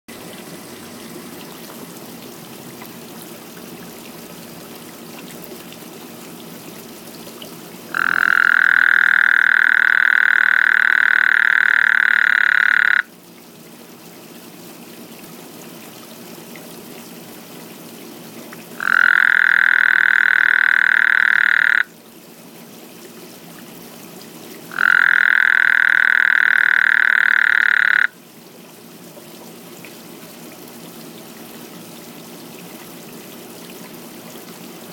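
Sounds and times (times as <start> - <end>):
frog calling: 7.9 - 13.1, 18.8 - 21.9, 24.7 - 28.2.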